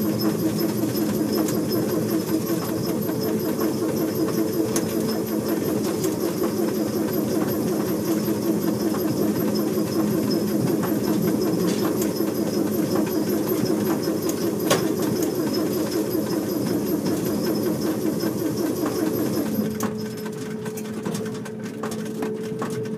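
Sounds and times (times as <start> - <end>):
train motor hum: 0.0 - 19.6.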